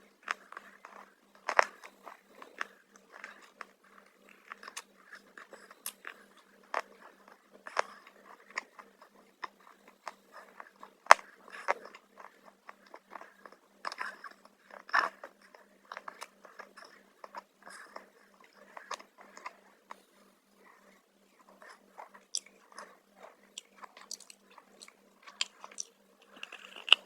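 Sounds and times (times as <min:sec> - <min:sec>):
chewing crunchy chips: 0:21.5 - 0:27.0.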